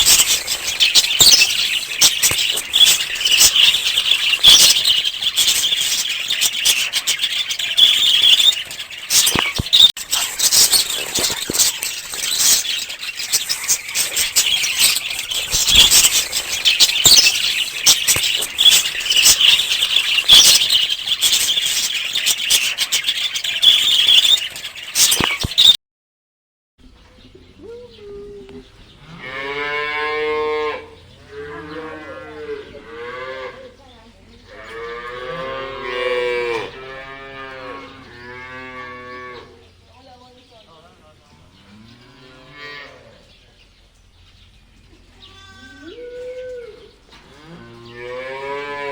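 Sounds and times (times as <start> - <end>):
high-pitched hissing chatter: 0.0 - 25.7.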